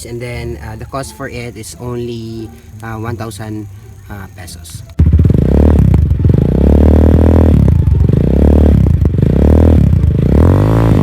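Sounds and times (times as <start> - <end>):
motorcycle engine revving: 4.8 - 11.0.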